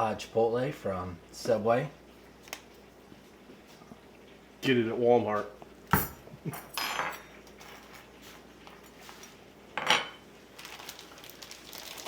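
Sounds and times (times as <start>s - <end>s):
dishes clattering: 5.9s - 8.1s, 9.8s - 10.2s
dishes and utensils clinking: 5.9s - 8.2s, 9.8s - 10.2s.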